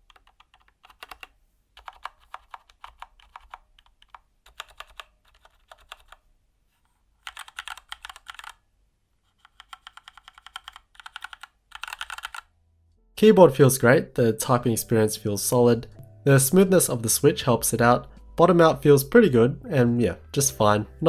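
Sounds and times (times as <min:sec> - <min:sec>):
mechanical keyboard key clacks: 0:09.5 - 0:12.5.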